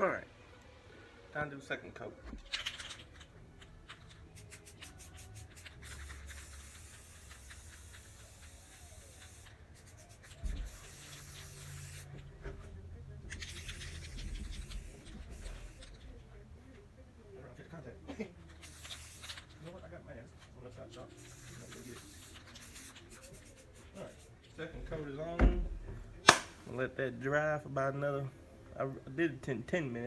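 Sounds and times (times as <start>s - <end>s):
spray can ball rattling: 2.5s - 12.1s, 13.3s - 16.0s, 18.5s - 19.6s, 21.2s - 23.7s
spray paint hissing: 4.4s - 12.2s, 13.3s - 16.0s, 18.6s - 19.6s, 21.2s - 24.3s.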